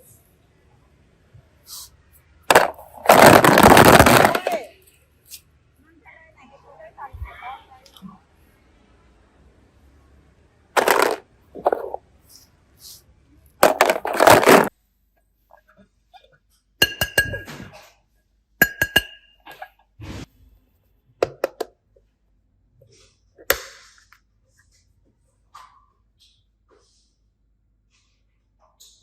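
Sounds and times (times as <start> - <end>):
small hard containers clinking: 2.5 - 4.7, 10.8 - 12.0, 13.6 - 14.7.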